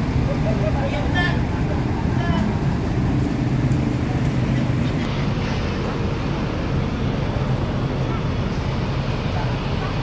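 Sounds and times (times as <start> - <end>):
diesel bus engine rumbling: 0.0 - 10.0.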